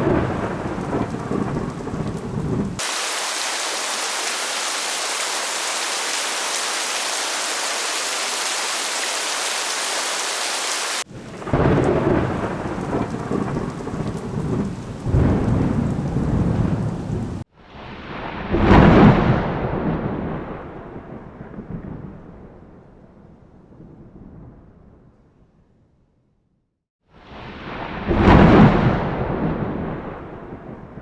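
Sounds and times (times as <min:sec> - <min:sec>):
heavy rain hissing: 0:00.0 - 0:17.5
thunder rumbling: 0:00.0 - 0:25.1, 0:27.3 - 0:31.0.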